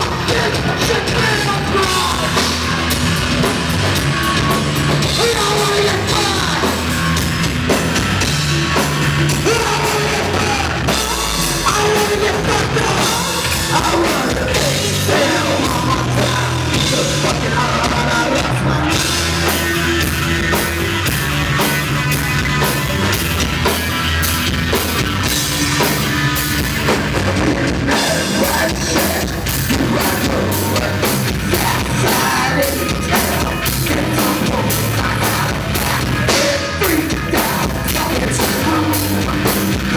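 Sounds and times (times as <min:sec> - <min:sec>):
vocals: 0:00.0 - 0:23.8, 0:24.7 - 0:39.9
live rock band playing: 0:00.0 - 0:39.9
pounding drum kit: 0:00.0 - 0:39.9.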